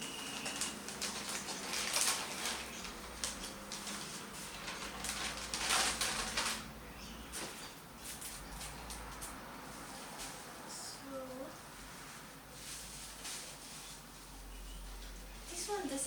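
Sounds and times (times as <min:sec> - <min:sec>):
packaging rustling: 0:00.0 - 0:06.8.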